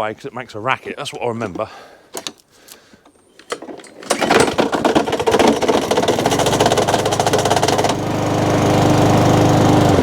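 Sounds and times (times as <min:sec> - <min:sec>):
lawn mower engine running: 0:03.4 - 0:10.0
loud rapid rattling: 0:03.5 - 0:08.0.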